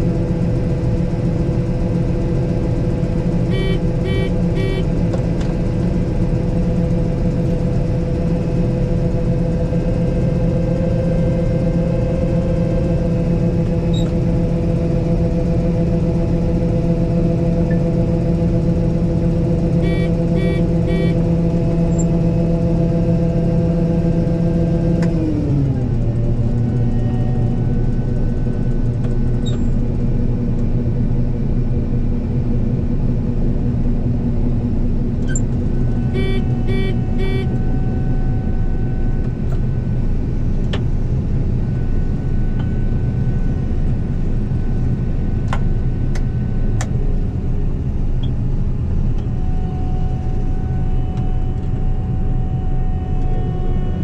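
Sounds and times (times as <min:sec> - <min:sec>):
combine harvester engine hum: 0:00.0 - 0:54.0
short electronic beeps: 0:03.5 - 0:04.9, 0:19.8 - 0:21.2, 0:36.1 - 0:37.5.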